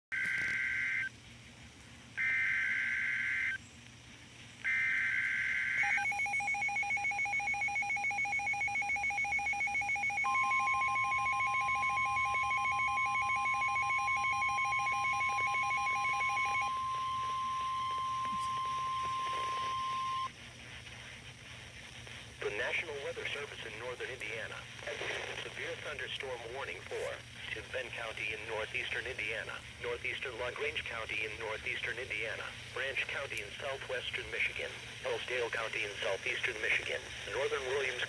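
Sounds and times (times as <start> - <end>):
steady warning alarm tone: 0.1 - 1.1, 2.2 - 3.6, 4.6 - 20.3
warbling data tones: 4.6 - 20.3
pulsing two-tone beep: 5.8 - 20.3.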